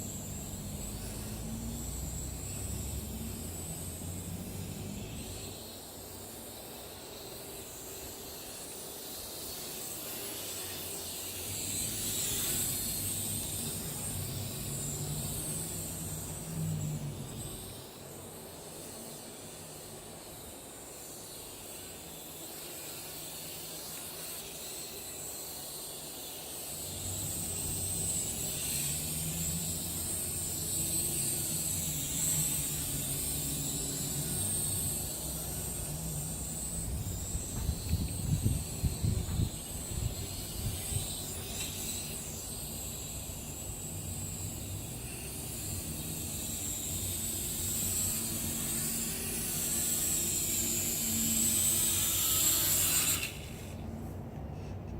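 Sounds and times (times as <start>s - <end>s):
quadcopter propellers whining: 0.0s - 6.4s, 7.0s - 20.3s, 20.9s - 54.2s
wind rumbling on microphone: 36.8s - 41.0s.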